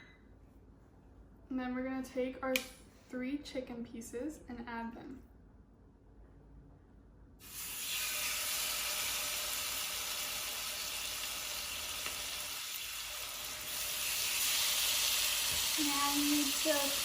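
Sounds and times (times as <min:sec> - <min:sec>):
chicken sizzling in hot oil: 0:07.4 - 0:17.0.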